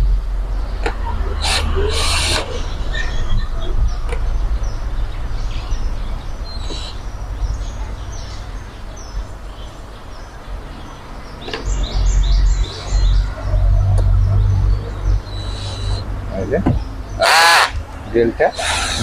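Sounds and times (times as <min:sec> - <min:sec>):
small birds chirping: 0:00.0 - 0:19.0
steady low rumble: 0:02.6 - 0:17.2.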